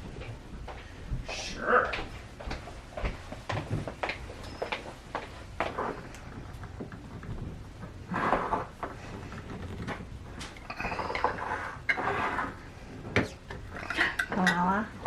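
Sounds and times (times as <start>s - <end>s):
containers clicking and scraping: 5.7s - 15.0s.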